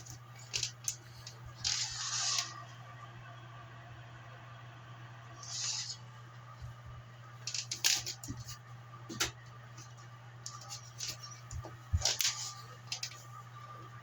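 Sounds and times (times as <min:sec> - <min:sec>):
heater fan humming: 0:00.0 - 0:14.0
clicks and knocks of heater handling: 0:10.5 - 0:13.2.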